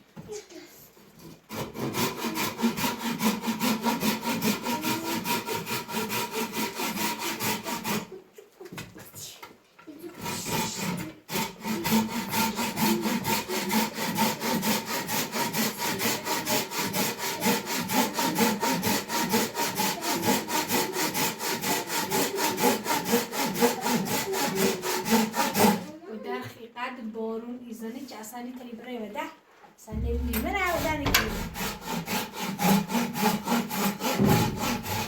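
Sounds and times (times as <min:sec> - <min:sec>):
rapid rasping strokes: 0:10.2 - 0:25.9, 0:29.9 - 0:35.0.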